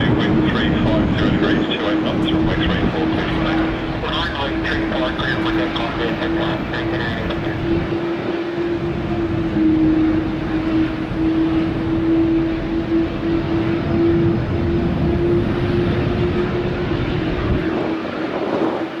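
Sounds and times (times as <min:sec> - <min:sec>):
jet engine whine: 0:00.0 - 0:19.0
jet engines rumbling: 0:00.0 - 0:19.0.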